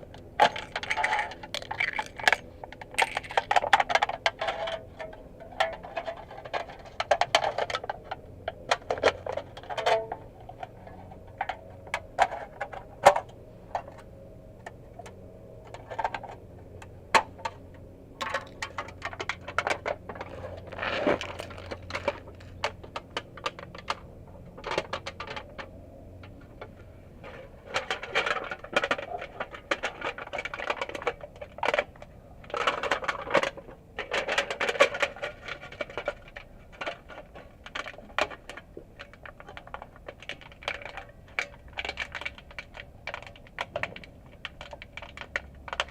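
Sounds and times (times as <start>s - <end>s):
scraping or crinkling: 0.1s - 14.1s, 14.9s - 45.9s
metal tools clinking and rattling: 0.4s - 8.0s, 32.5s - 45.9s.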